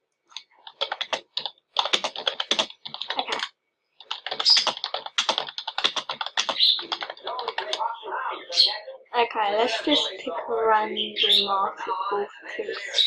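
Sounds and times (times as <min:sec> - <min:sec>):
computer keyboard typing: 0:00.3 - 0:07.8.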